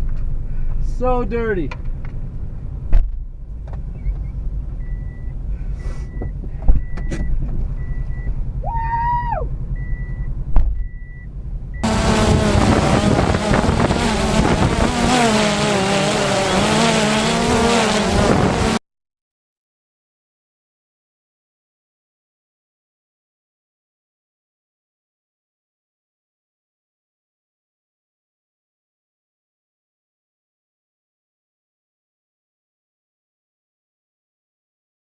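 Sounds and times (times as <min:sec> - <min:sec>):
car engine idling: 0:00.0 - 0:08.8, 0:09.4 - 0:18.7.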